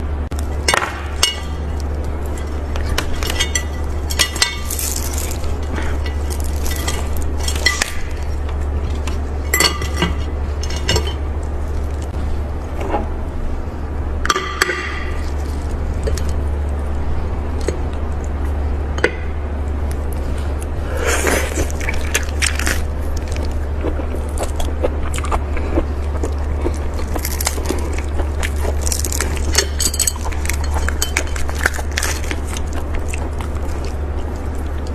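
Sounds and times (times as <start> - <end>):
steady low hum: 0.0 - 34.9
crackling and rustling: 0.3 - 13.3, 19.7 - 34.9
dishes and utensils clinking: 0.7 - 8.3, 8.9 - 11.2.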